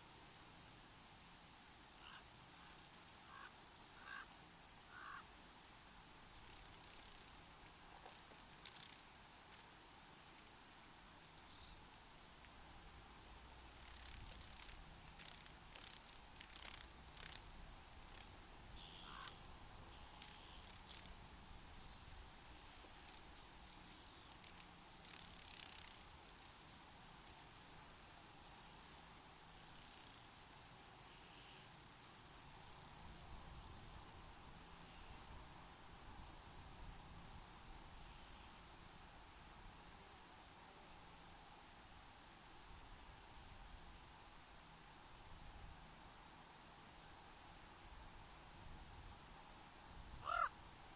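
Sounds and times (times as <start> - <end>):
soft hiss: 0.0 - 50.9
cricket chirping: 0.1 - 11.8, 13.6 - 41.0.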